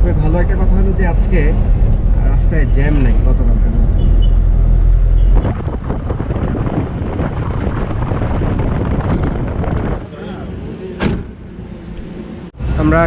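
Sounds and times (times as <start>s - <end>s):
wind buffeting microphone: 0.0s - 10.1s
car low rumble: 0.0s - 13.0s
rough crackling noise: 4.7s - 10.1s.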